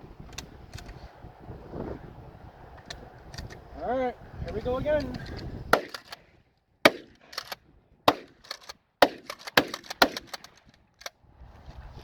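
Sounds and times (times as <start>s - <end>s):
shotgun shots: 5.7s - 6.2s, 6.8s - 10.5s
light sharp cracks: 5.8s - 11.2s.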